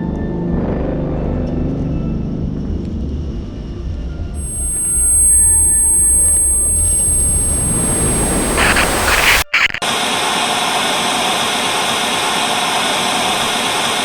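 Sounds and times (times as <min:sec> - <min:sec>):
rumbling hissing noise: 0:04.4 - 0:09.8
white-noise static: 0:04.4 - 0:09.8.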